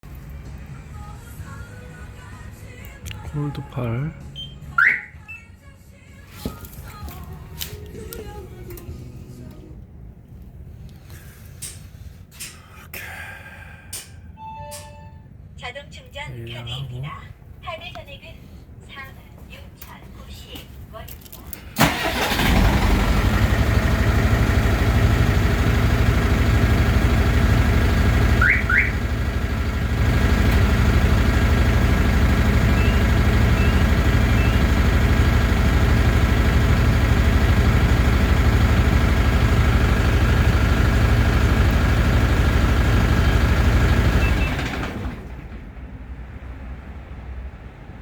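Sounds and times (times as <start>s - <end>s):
car alarm siren chirps: 4.4s - 5.3s, 28.3s - 29.1s
diesel engine idling: 21.7s - 47.9s.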